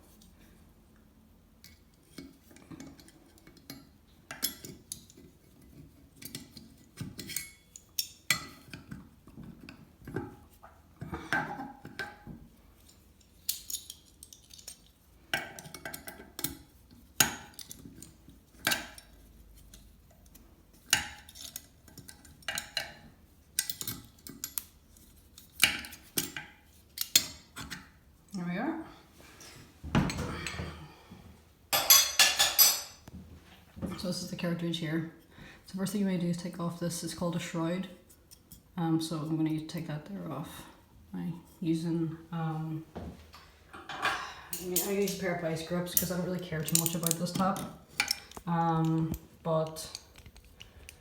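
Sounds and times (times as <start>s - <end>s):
metallic clinks and knocks: 45.9s - 51.0s.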